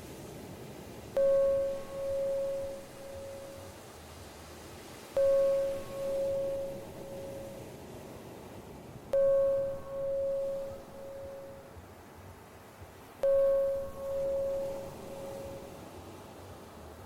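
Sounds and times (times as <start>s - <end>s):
sea waves: 1.2s - 3.7s, 4.5s - 8.2s, 9.2s - 11.7s, 13.2s - 15.8s
bell-like chime: 1.2s - 3.8s, 5.2s - 7.6s, 9.2s - 11.7s, 13.2s - 15.8s.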